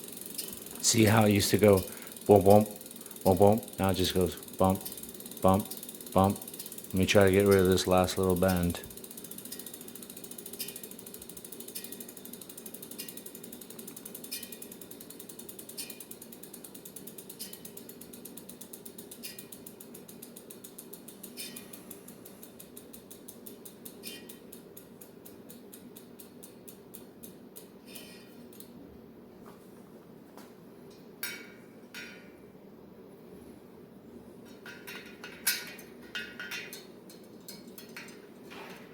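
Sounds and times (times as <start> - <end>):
bicycle freewheel ratcheting clicks: 0.0 - 28.8, 34.5 - 38.9.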